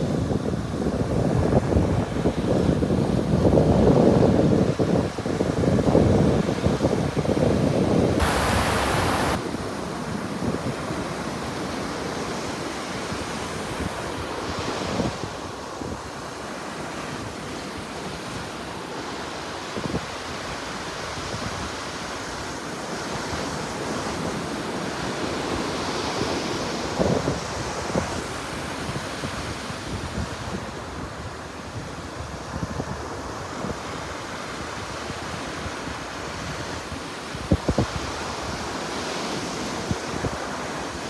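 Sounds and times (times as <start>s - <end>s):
wind buffeting microphone: 7.2s - 9.4s
sea waves washing ashore: 8.0s - 9.4s.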